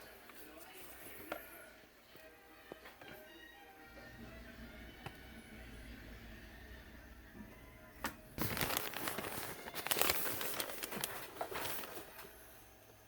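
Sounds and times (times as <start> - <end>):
rustling and crinkling handling: 8.0 - 12.4.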